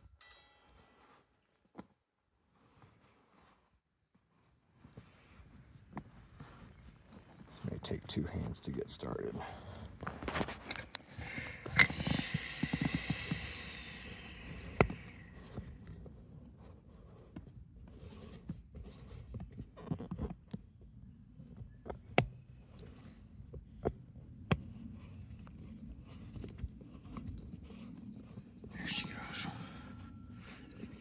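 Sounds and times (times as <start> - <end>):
hiss: 11.0 - 15.5.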